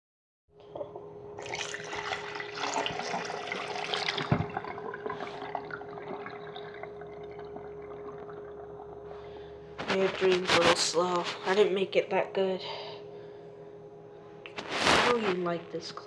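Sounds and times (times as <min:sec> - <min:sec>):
toilet flushing water gurgling: 0:00.8 - 0:10.0.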